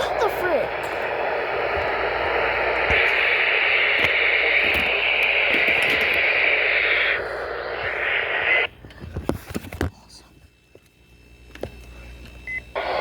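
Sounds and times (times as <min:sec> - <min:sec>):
radio crackles: 0:00.0 - 0:09.8, 0:12.8 - 0:13.0
radio static hiss: 0:00.0 - 0:09.9, 0:12.7 - 0:13.0.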